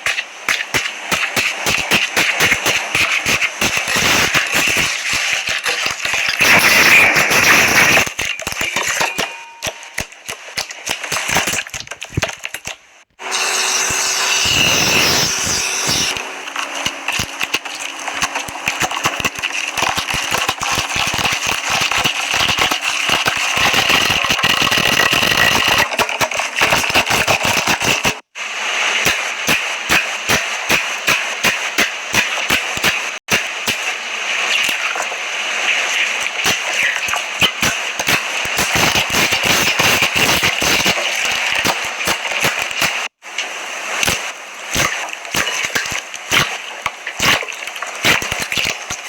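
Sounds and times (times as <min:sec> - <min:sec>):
slime crackling and popping: 0:44.0 - 0:49.0.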